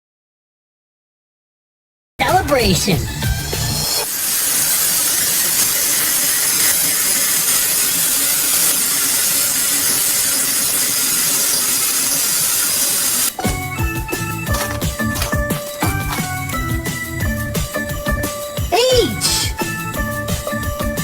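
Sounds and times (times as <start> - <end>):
loud steady hiss: 4.0 - 13.4.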